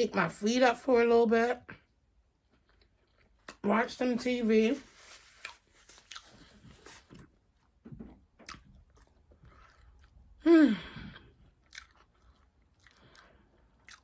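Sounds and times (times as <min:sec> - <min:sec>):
person chewing food: 0:01.8 - 0:03.6, 0:05.2 - 0:14.0.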